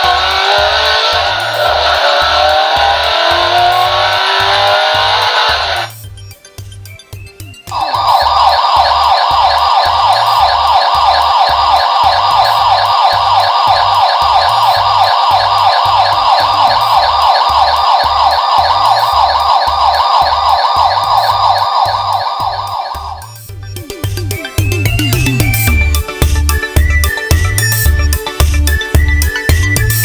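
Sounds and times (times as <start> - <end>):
bicycle siren horn wailing: 0.0 - 6.0, 7.7 - 23.4
background music with a beat: 0.0 - 30.0.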